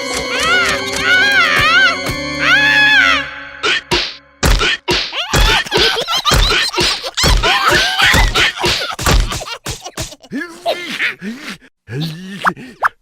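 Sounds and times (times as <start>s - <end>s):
heavy cartoon whacks: 3.8s - 10.2s.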